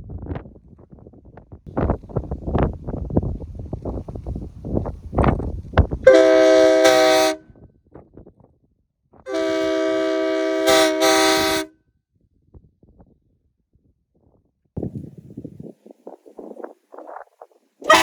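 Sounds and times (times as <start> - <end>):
air train horn chord: 6.0 - 7.4, 9.3 - 11.7.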